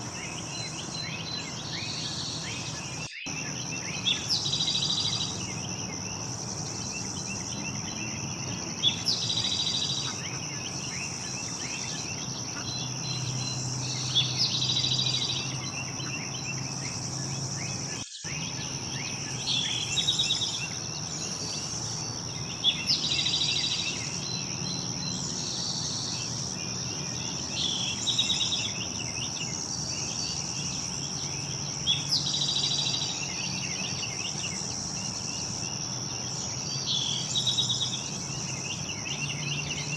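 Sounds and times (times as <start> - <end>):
songbird trilling: 0.0 - 30.3
crickets chirping: 0.0 - 39.9.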